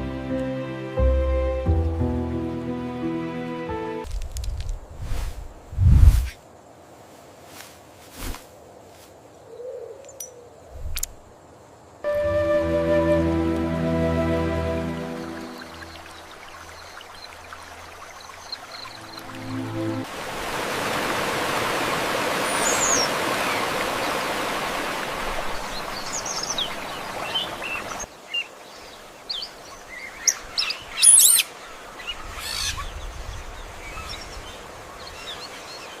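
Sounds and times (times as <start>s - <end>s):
rushing water: 12.0s - 36.0s
birds chirping: 14.1s - 20.1s.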